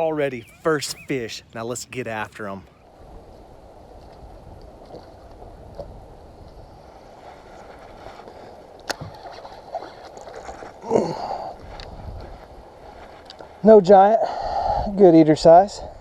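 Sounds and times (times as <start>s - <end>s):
strong wind: 2.7s - 16.0s
water lapping against boat hull: 3.9s - 13.5s.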